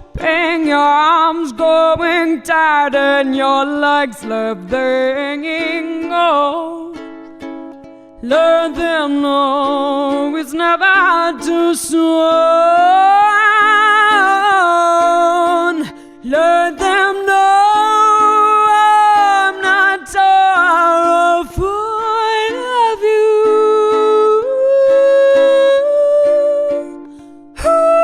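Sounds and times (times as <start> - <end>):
woman singing with vibrato: 0.0 - 7.2, 8.2 - 28.0
plucked acoustic string instrument: 0.0 - 28.0.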